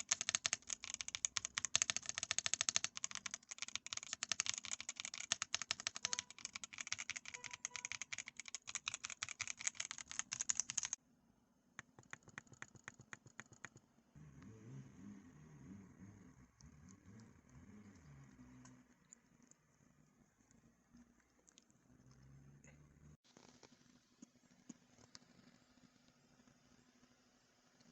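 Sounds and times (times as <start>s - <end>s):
mechanical keyboard clicking: 0.0s - 11.0s.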